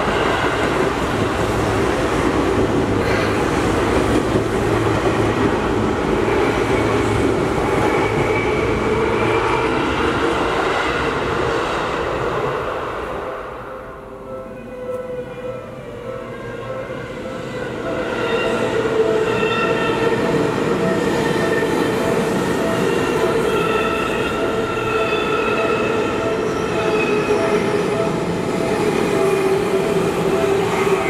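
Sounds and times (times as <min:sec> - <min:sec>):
train wheels rumbling on rail: 0:00.0 - 0:13.5, 0:17.1 - 0:31.0
crossing warning bell ringing: 0:13.7 - 0:31.0.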